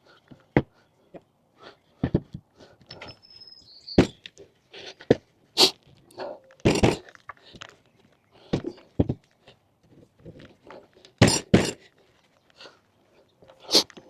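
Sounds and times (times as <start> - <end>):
parts knocking and rattling: 6.5 - 7.2, 11.2 - 11.8.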